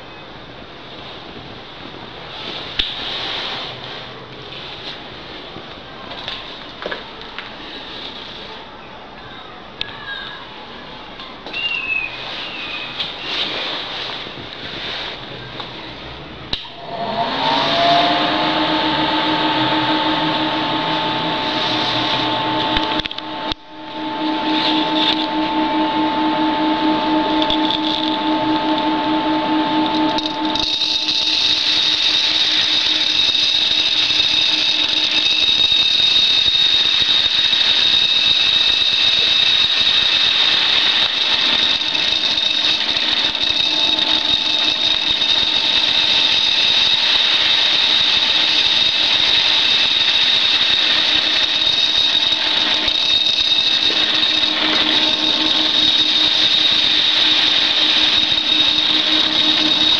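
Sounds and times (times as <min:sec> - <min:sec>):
machine motor hum and whine: 0:15.9 - 0:59.9.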